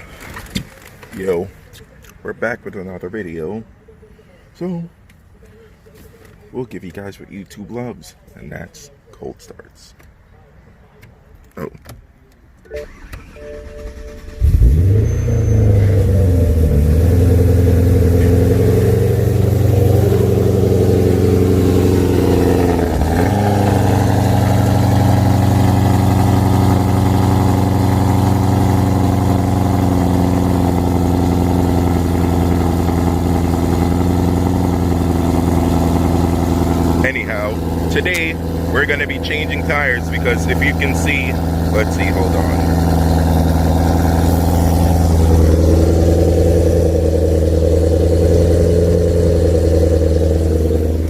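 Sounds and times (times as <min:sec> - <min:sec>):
car engine cranking and starting: 0:12.6 - 0:51.0
car engine idling: 0:12.9 - 0:51.0.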